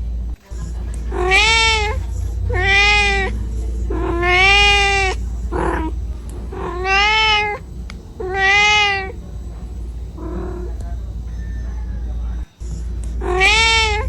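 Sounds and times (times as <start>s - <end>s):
kitten meowing: 1.1s - 9.2s, 13.2s - 14.0s.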